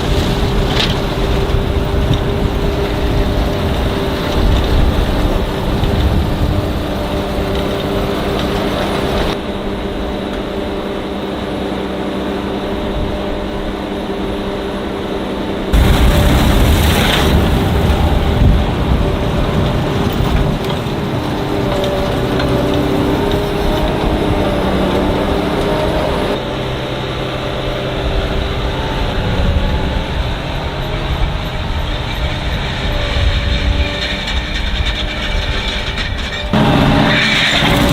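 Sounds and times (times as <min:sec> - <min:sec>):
diesel machinery engine drone: 0:00.0 - 0:37.9.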